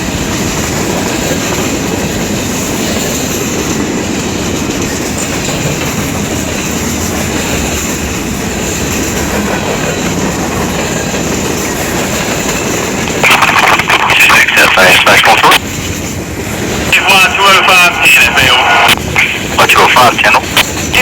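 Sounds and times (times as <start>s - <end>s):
train wheels on rails: 0.0s - 21.0s
radio noise burst: 13.2s - 15.6s, 16.9s - 21.0s.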